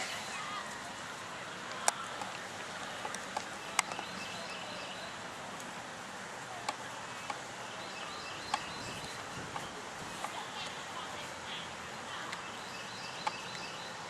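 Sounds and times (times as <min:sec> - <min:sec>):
faint bird chirps: 0:07.1 - 0:09.2.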